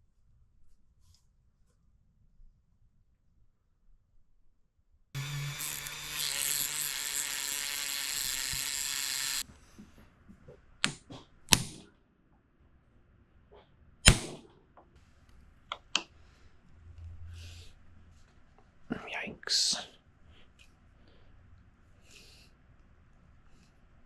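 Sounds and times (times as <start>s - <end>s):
mechanical whirring: 5.2s - 9.4s.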